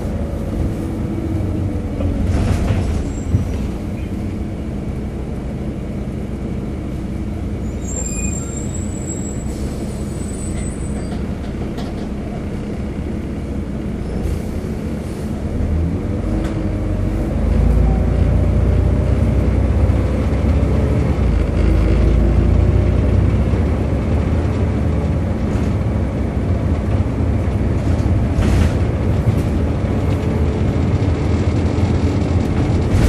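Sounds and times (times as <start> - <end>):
bus diesel engine drone: 0.0 - 33.0
thin high squeal: 7.7 - 11.2.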